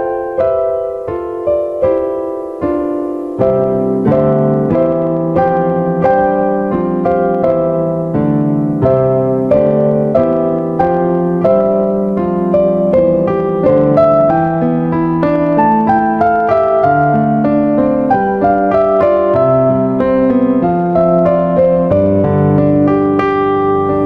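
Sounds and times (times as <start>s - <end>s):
piano music: 0.0s - 24.0s.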